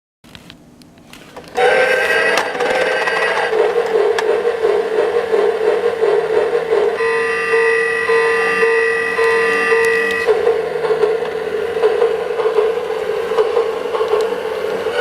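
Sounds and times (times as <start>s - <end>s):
electronic alarm clock: 7.0s - 10.4s.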